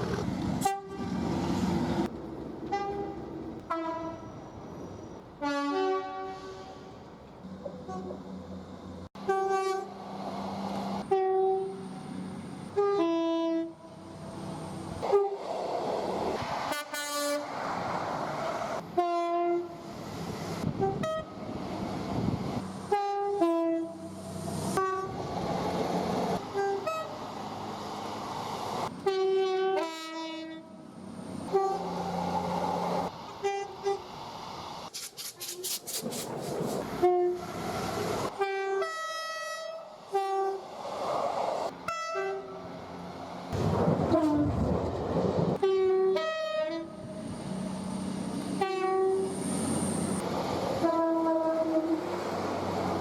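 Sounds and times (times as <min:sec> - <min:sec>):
locomotive engine and rail rumble: 0:00.0 - 0:53.0
train horn blasts: 0:00.6 - 0:01.2, 0:02.7 - 0:04.3, 0:05.4 - 0:07.0, 0:09.2 - 0:10.0, 0:11.0 - 0:11.8, 0:12.7 - 0:14.0, 0:16.7 - 0:17.5, 0:19.0 - 0:19.8, 0:20.8 - 0:21.4, 0:22.9 - 0:24.1, 0:24.7 - 0:25.2, 0:26.4 - 0:27.1, 0:29.0 - 0:30.7, 0:31.5 - 0:32.0, 0:37.0 - 0:37.5, 0:38.3 - 0:40.6, 0:41.9 - 0:42.6, 0:44.1 - 0:44.6, 0:45.6 - 0:47.0, 0:48.6 - 0:49.4, 0:50.8 - 0:52.0.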